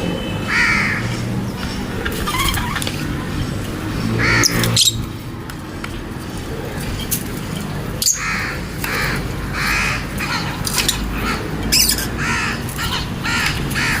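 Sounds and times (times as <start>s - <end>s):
lovebirds chirping harshly: 4.0s - 5.2s, 9.8s - 14.0s.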